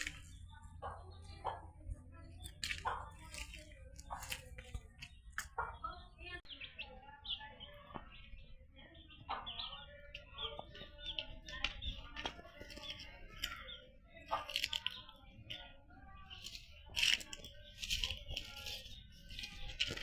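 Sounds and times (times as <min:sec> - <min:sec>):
small birds chirping: 0:00.0 - 0:20.0.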